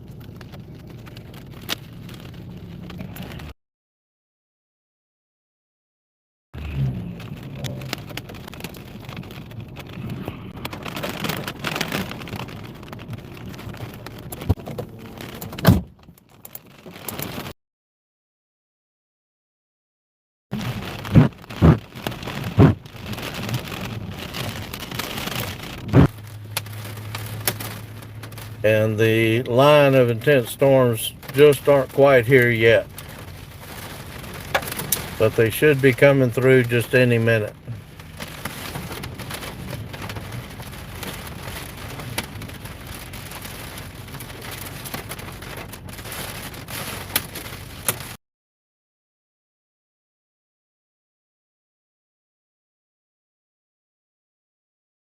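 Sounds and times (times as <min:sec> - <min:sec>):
rain falling: 0:00.0 - 0:03.5, 0:06.6 - 0:17.5, 0:20.6 - 0:48.2
thumps on microphone: 0:21.1 - 0:21.9, 0:22.5 - 0:22.8.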